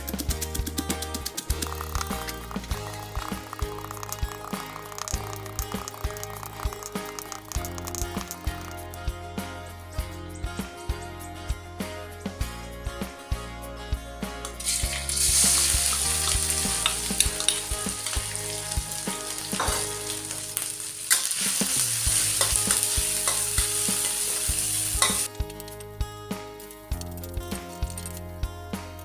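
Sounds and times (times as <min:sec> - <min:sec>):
background music with steady beat: 0:00.0 - 0:29.0
food sizzling in hot oil: 0:02.7 - 0:08.4, 0:14.6 - 0:25.6.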